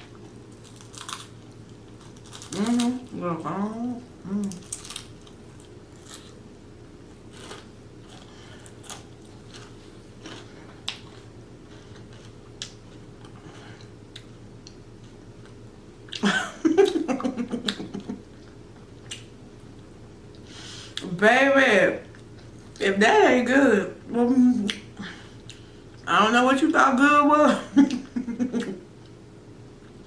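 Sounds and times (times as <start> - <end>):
chewing and crunching food: 0.0 - 16.2.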